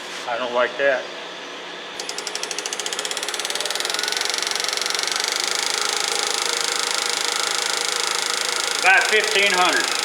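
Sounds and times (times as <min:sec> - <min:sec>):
wood lathe whirring: 0:02.0 - 0:10.0.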